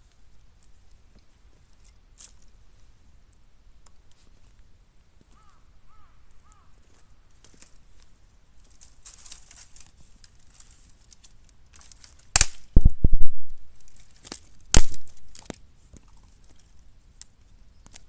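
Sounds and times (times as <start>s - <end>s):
fire crackling and hissing: 7.2s - 18.0s
loud sharp crack of bamboo: 8.7s - 16.2s.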